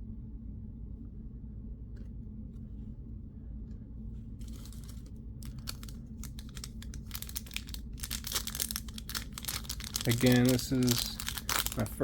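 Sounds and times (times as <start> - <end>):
steady low hum: 0.0 - 12.0
card wrappers crinkling: 4.4 - 12.0.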